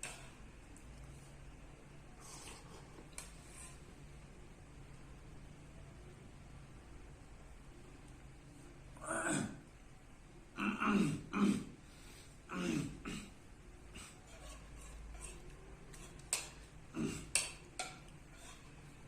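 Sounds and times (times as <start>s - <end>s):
person clearing throat: 9.0s - 9.6s, 10.6s - 11.8s, 12.5s - 14.2s, 16.9s - 17.6s.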